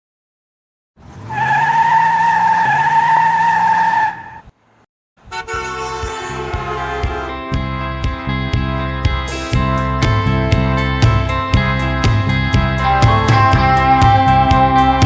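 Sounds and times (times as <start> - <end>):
vehicle horn: 5.2 - 7.5
music with regular beat: 6.4 - 15.0.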